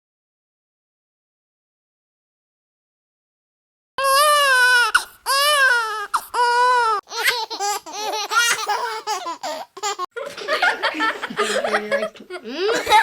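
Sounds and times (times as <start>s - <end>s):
baby crying: 4.0s - 10.1s.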